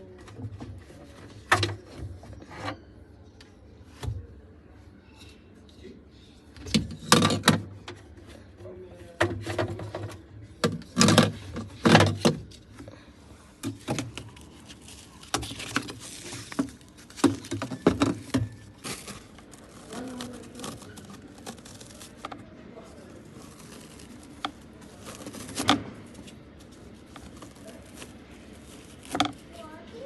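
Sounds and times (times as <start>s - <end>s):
quiet rustling: 12.6s - 30.0s.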